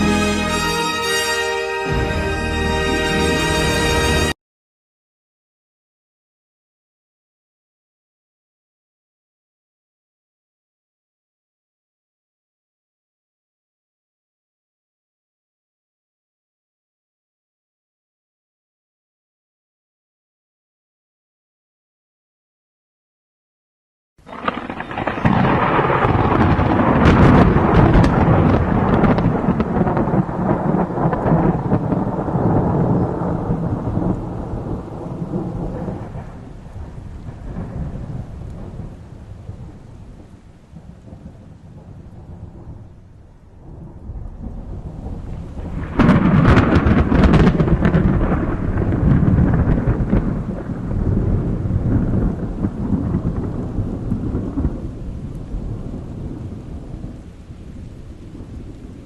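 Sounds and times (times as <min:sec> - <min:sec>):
sharp thunder crack: 0:00.0 - 0:04.4, 0:24.2 - 0:59.0
rolling thunder: 0:24.2 - 0:59.0.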